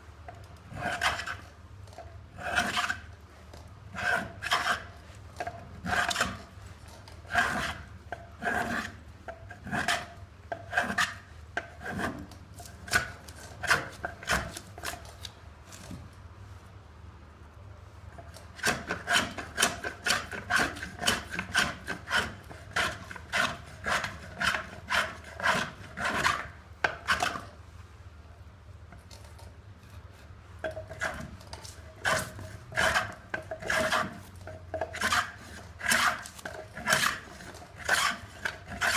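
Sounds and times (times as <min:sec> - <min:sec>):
hand plane rasping on wood: 0:00.8 - 0:01.4, 0:02.4 - 0:03.0, 0:04.0 - 0:04.9, 0:07.3 - 0:09.0, 0:09.6 - 0:11.2, 0:11.8 - 0:12.2, 0:18.6 - 0:27.4, 0:30.8 - 0:38.9.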